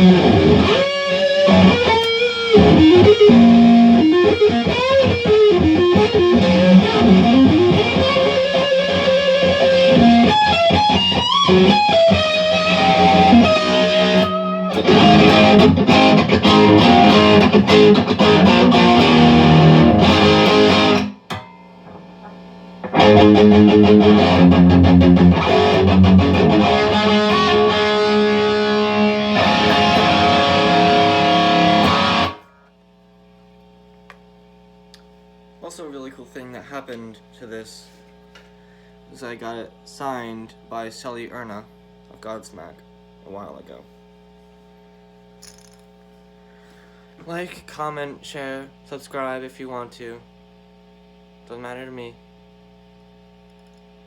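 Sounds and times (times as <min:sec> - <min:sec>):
electric guitar through an amp: 0:00.0 - 0:21.2, 0:21.8 - 0:32.6.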